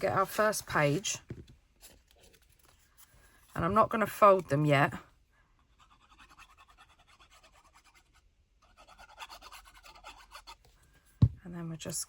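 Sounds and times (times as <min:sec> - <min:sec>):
scratchy rubbing on paper: 0:05.6 - 0:10.6.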